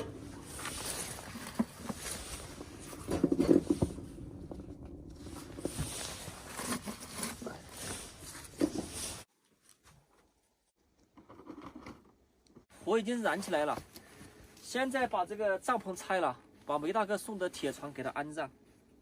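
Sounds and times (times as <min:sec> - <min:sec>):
things being handled: 0:00.0 - 0:09.3.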